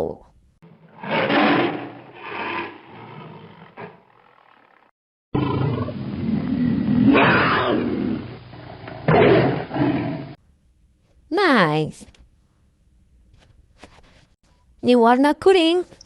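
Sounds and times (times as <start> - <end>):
tiger roar: 0.6 - 4.8, 5.4 - 10.4.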